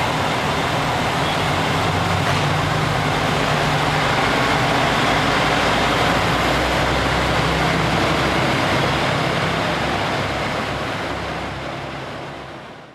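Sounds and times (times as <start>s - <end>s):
diesel engine drone: 0.0s - 12.9s
train rumble and rushing: 0.0s - 12.9s.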